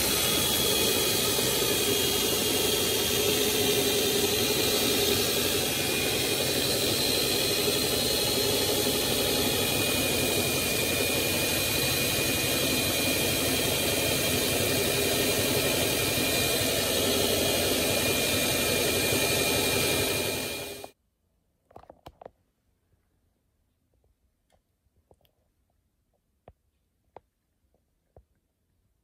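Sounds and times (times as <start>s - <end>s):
drum sander running: 0.0s - 21.0s.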